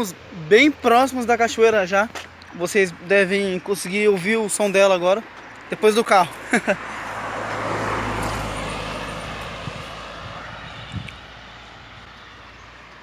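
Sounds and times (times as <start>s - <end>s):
car passing by: 5.4s - 13.0s.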